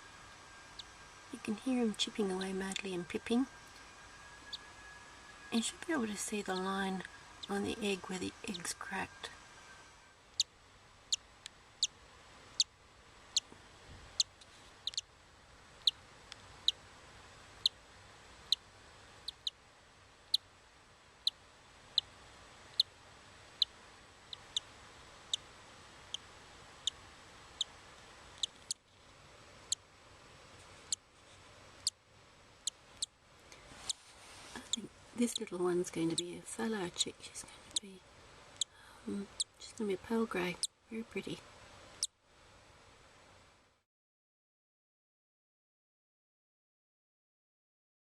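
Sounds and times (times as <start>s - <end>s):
bird chick cheeping: 14.2s - 15.0s, 19.2s - 19.6s.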